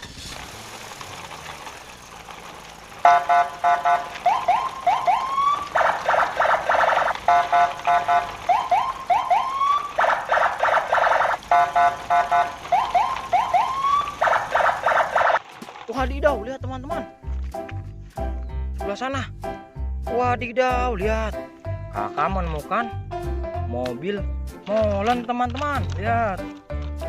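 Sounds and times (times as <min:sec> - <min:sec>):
electronic car alarm: 0:03.0 - 0:15.4.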